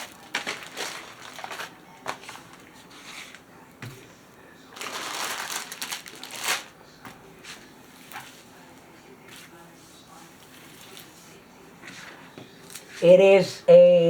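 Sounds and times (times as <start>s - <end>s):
packaging rustling and crinkling: 0.0s - 3.4s, 4.7s - 6.8s.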